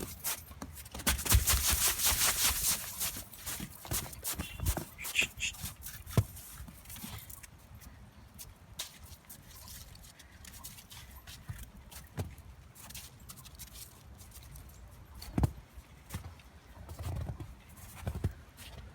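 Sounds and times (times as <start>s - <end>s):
footsteps crunching in snow: 0.0s - 6.8s.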